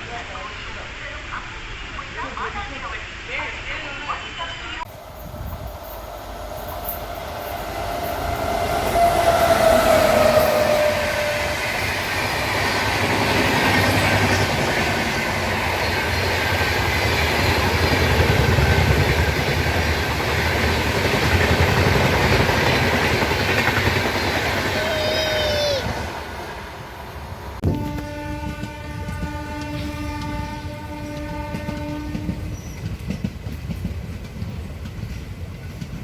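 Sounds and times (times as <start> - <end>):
train rumbling and rattling: 0.0 - 36.0
drawn-out horn tone: 4.9 - 11.9, 27.6 - 32.5.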